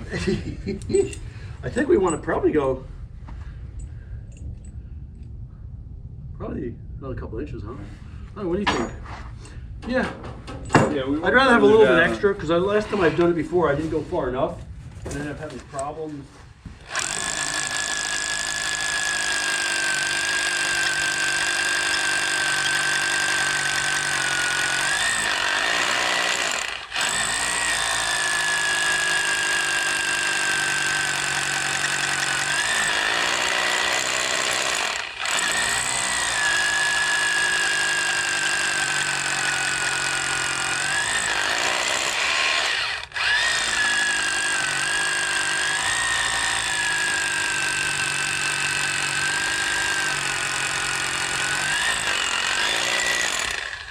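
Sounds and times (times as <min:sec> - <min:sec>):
hammer drill boring: 0:16.8 - 0:53.9.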